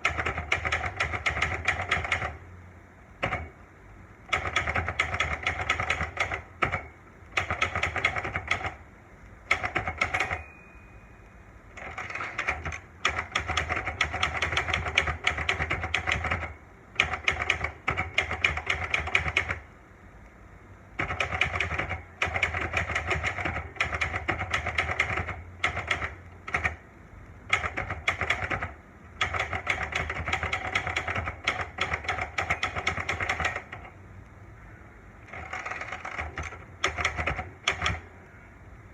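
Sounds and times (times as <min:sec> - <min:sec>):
typewriter keys striking: 0:00.0 - 0:02.4, 0:03.2 - 0:03.5, 0:04.3 - 0:08.8, 0:09.5 - 0:10.4, 0:11.8 - 0:19.6, 0:21.0 - 0:26.8, 0:27.5 - 0:33.9, 0:35.3 - 0:38.1
typewriter bell ring: 0:09.8 - 0:11.2, 0:11.8 - 0:12.7, 0:32.1 - 0:33.5.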